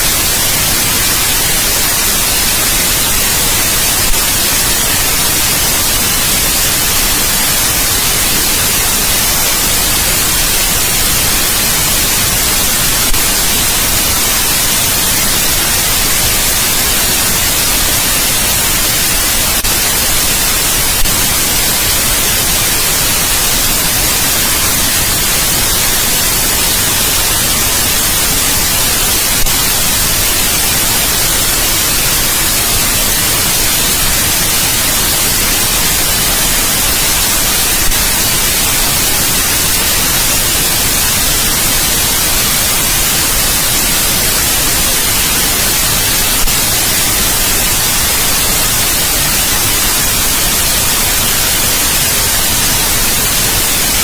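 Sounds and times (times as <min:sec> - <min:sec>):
white noise hiss: 0:00.0 - 0:54.0.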